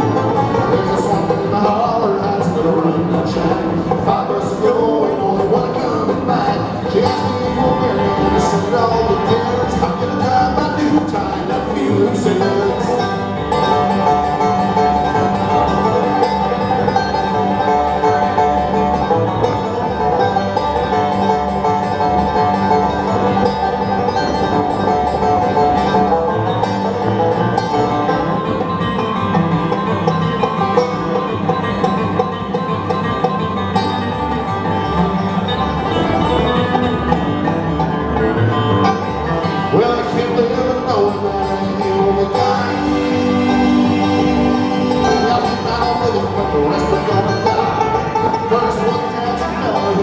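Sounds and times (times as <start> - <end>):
banjo picking: 0.0 - 50.0
guitar: 0.0 - 50.0
bass pulse: 6.0 - 48.7.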